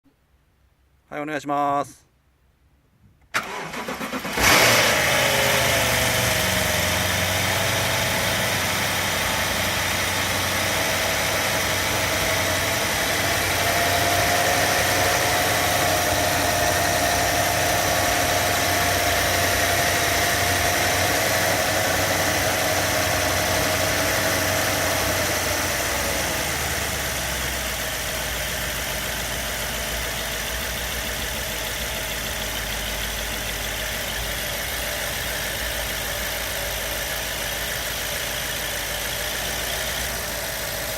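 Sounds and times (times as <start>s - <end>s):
engine cranking: 3.4s - 5.1s
car engine fast idle: 3.4s - 40.9s.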